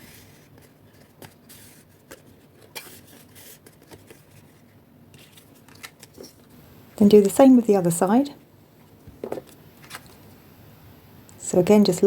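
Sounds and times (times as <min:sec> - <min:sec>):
rustling of cardstock: 0:00.0 - 0:06.5, 0:09.2 - 0:10.3.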